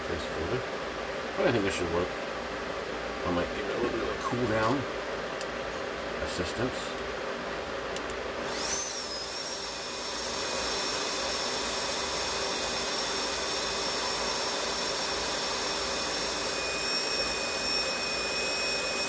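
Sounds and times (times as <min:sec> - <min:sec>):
electric blower whirring: 0:08.1 - 0:19.0.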